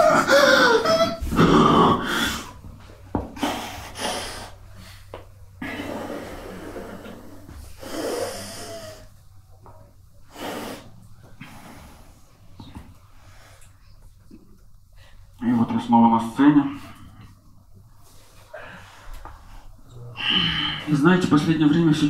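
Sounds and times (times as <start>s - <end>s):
person breathing heavily and snorting: 0.0s - 2.6s, 3.2s - 9.2s, 10.2s - 13.8s, 18.1s - 21.0s.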